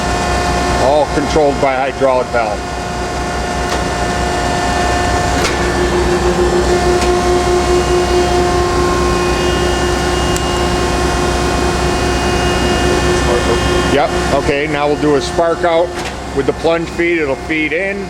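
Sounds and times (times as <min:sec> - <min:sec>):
grinder humming and whining: 0:00.0 - 0:18.0
machine click: 0:03.6 - 0:04.2, 0:05.0 - 0:07.2.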